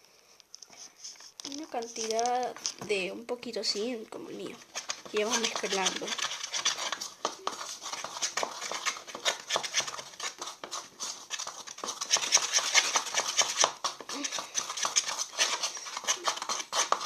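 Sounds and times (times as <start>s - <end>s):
utensil scraping a bowl: 4.6s - 17.0s.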